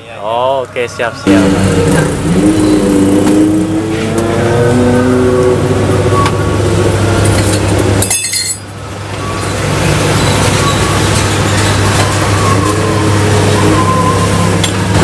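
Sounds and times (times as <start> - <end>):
road traffic noise: 0.0 - 15.0
glassy clinks of cups: 8.0 - 8.6.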